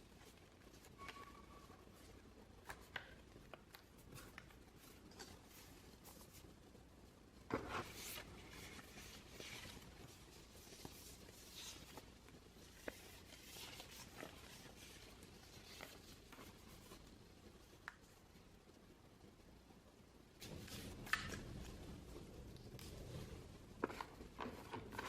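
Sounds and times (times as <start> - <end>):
cardboard and paper rustling: 7.5 - 17.1, 20.4 - 25.0.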